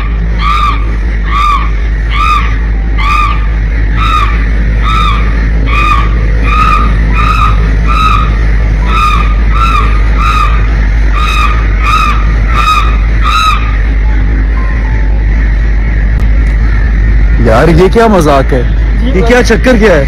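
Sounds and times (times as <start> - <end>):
steady low rumble: 0.0 - 20.0
crow-like caws: 0.3 - 13.8.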